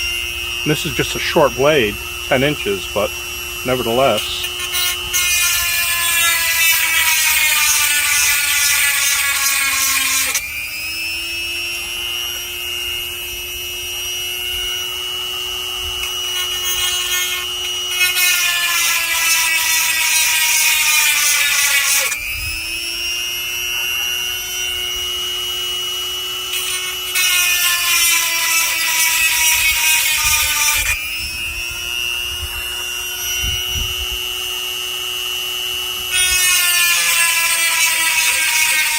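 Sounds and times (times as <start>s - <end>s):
electric motor whine: 0.0s - 38.9s
grinding stone on saw chain: 0.0s - 38.9s.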